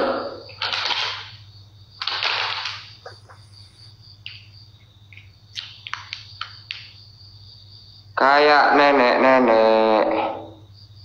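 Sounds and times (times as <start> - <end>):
insect trilling: 0.0 - 11.0
sharp clicks: 0.5 - 1.4, 2.0 - 3.2, 5.1 - 7.0.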